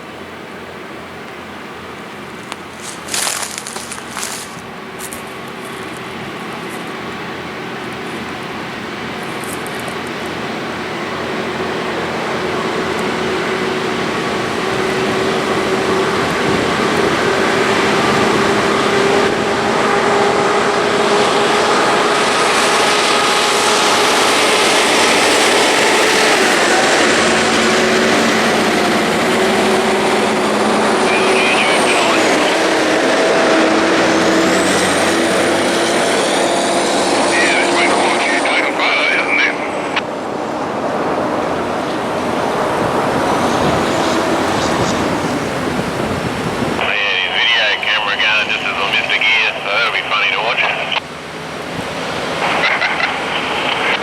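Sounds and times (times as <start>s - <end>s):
heavy road noise: 0.0s - 54.0s
truck diesel engines droning: 0.0s - 54.0s
tyre noise: 2.6s - 6.9s.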